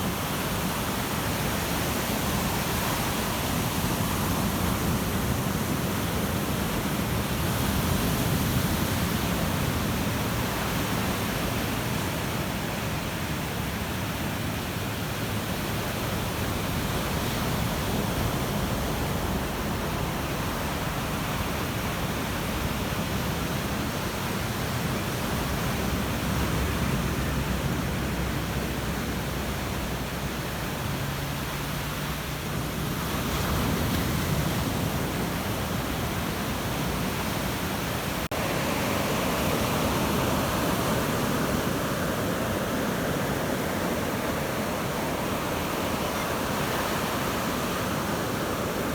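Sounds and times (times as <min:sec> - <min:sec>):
waves breaking: 0:15.3 - 0:48.9.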